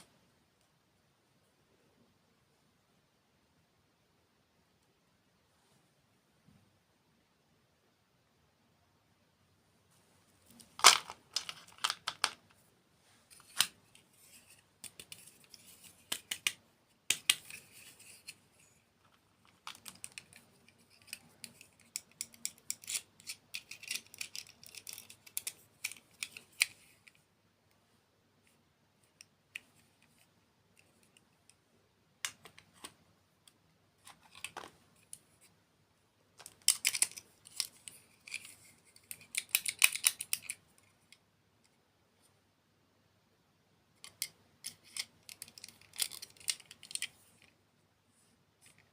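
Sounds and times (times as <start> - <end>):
crisp crackling and clicks: 19.0 - 27.2, 36.4 - 41.7, 44.0 - 47.6.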